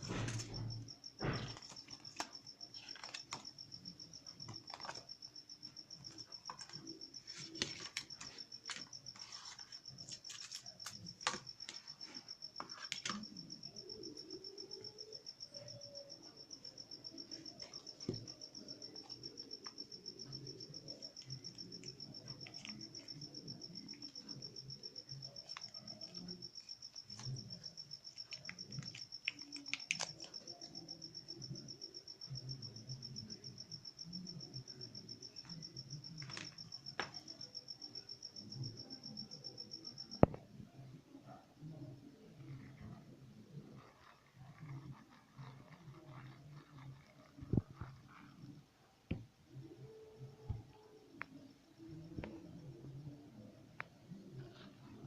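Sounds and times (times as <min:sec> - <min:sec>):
cricket chirping trill: 0:00.0 - 0:55.0.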